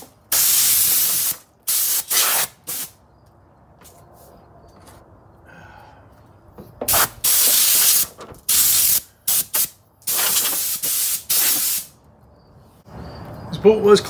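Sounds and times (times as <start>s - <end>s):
pressurised spray hissing: 0.3s - 2.9s, 6.9s - 12.0s.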